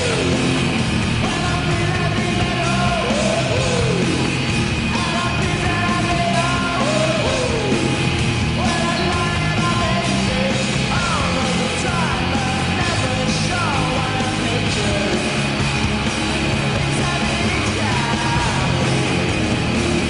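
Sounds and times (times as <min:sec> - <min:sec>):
loud rock song with shouted vocals: 0:00.0 - 0:20.0.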